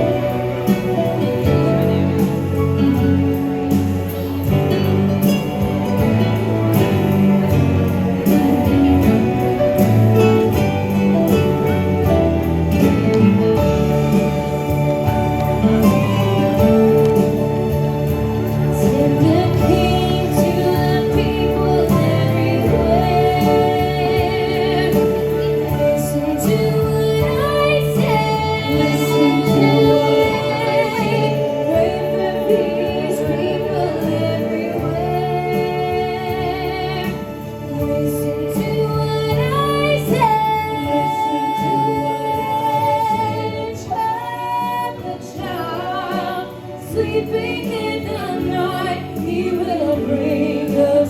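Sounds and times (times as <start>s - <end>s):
instrumental accompaniment: 0.0s - 51.0s
woman singing with vibrato: 18.6s - 51.0s.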